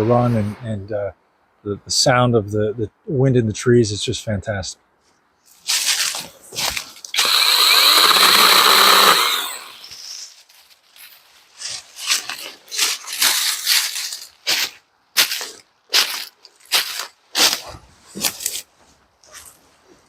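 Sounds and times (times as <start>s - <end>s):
short rustles: 5.0s - 7.1s
mini chainsaw whining: 7.1s - 10.0s.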